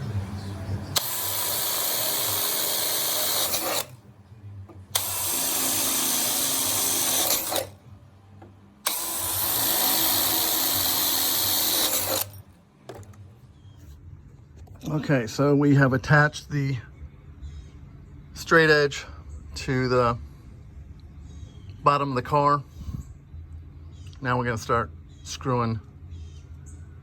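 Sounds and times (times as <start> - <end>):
power drill drilling: 0.9 - 4.0, 5.0 - 7.8, 8.9 - 12.4.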